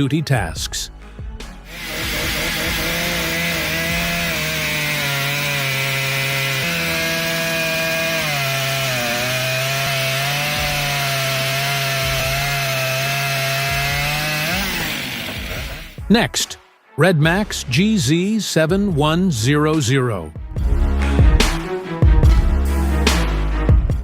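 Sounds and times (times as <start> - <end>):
chainsaw cutting wood: 1.5 - 16.0.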